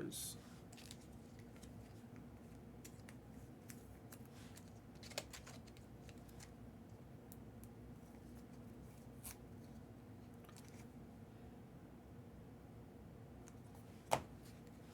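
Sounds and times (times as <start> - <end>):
low steady hum: 0.0 - 14.9
cards clicking and rustling: 0.7 - 6.6.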